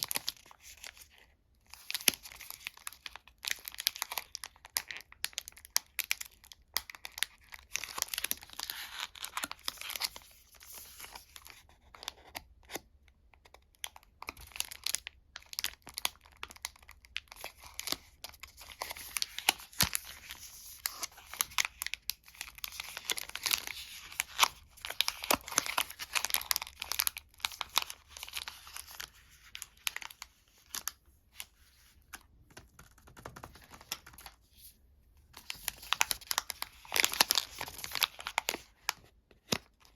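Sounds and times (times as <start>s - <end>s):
wrappers crinkling and tearing: 14.5s - 31.5s, 35.4s - 39.9s.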